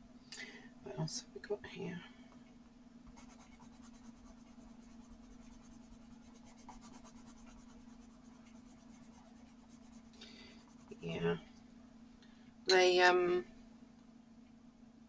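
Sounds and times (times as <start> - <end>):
low steady hum: 0.0 - 15.0
coloured pencil scratching on paper: 3.2 - 11.0.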